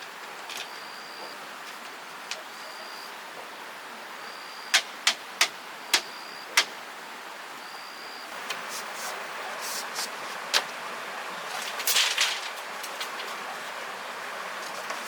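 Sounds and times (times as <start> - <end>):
rustling and scraping: 8.4 - 10.8, 11.4 - 13.8, 14.5 - 15.0.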